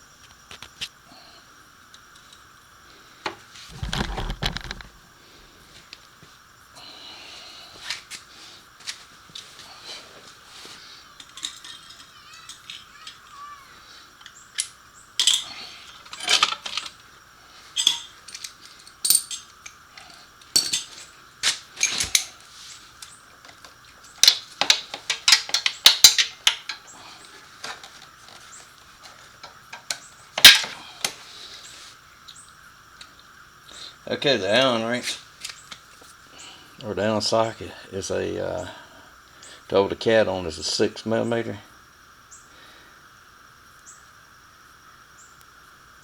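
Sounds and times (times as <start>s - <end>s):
faint steady hiss: 0.0s - 46.0s
hand tools clinking on metal: 11.1s - 13.5s, 14.2s - 17.0s, 17.7s - 28.4s, 29.0s - 31.2s.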